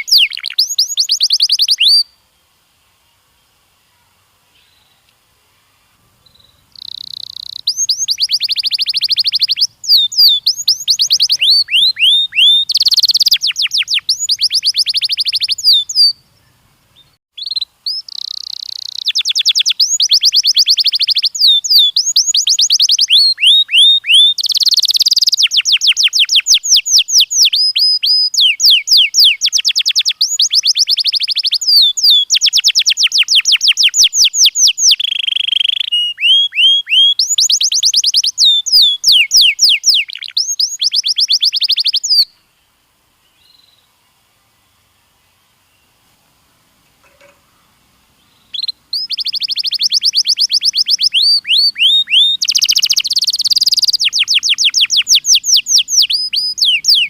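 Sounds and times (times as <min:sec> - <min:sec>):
canary singing trills: 0:00.0 - 0:02.2, 0:06.2 - 0:42.4, 0:47.0 - 0:57.0.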